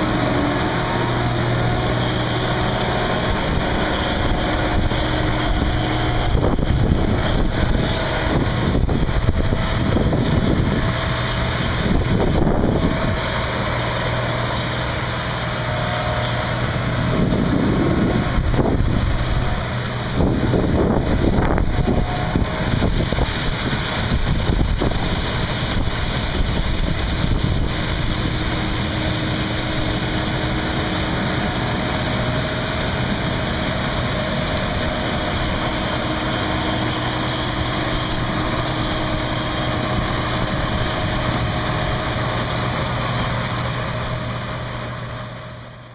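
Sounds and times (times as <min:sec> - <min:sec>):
diesel farm machinery drone: 0:00.0 - 0:45.9
rushing noise: 0:00.0 - 0:45.9.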